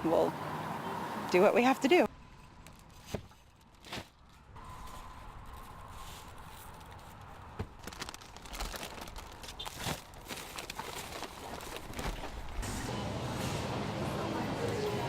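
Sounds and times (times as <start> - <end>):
crinkling and rustling: 2.6 - 12.8.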